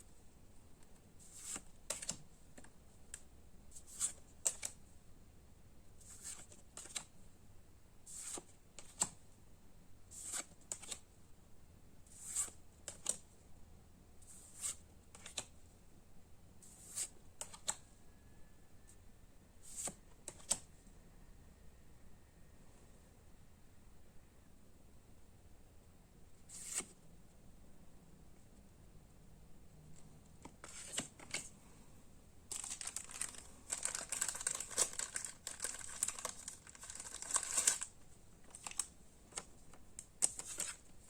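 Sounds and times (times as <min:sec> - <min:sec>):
trading cards swishing: 0:26.5 - 0:26.9.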